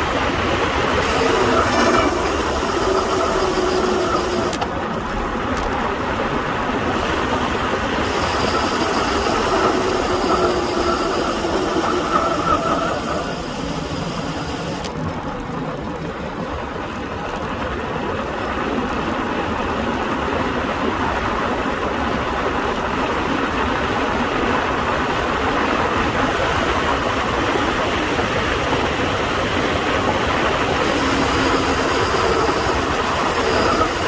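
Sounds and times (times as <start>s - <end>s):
bike tyre noise: 0.0s - 5.9s, 6.8s - 14.9s, 26.2s - 34.0s.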